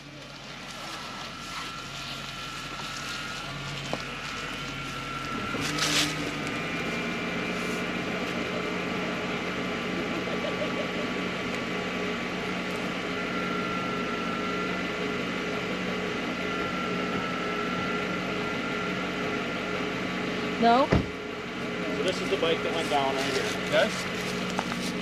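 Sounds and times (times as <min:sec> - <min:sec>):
vehicle engine idling: 0:00.0 - 0:25.0.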